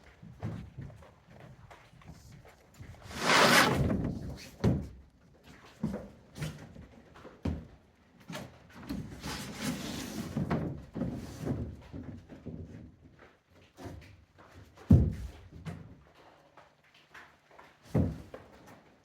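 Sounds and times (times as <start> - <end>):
loud scraping rush: 3.1 - 3.8.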